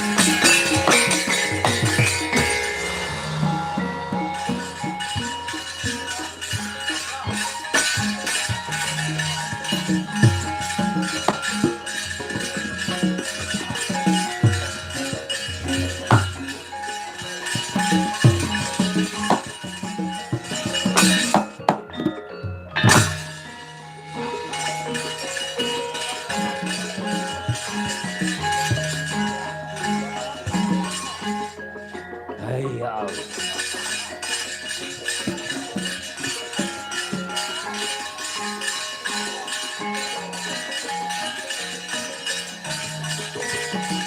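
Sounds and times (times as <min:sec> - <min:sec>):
drum strokes: 0:00.0 - 0:44.0
gamelan music: 0:00.0 - 0:44.0
metallophones ringing: 0:00.0 - 0:44.0.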